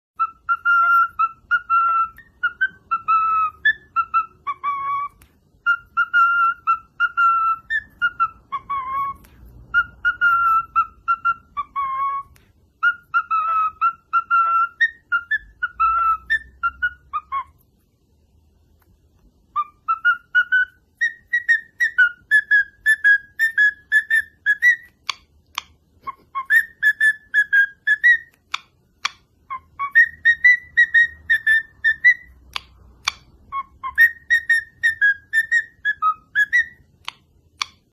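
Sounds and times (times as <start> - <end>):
whistled notes: 0.2 - 17.6, 19.5 - 25.2, 26.0 - 28.5, 29.4 - 36.9
sharp clicks: 32.5 - 33.4.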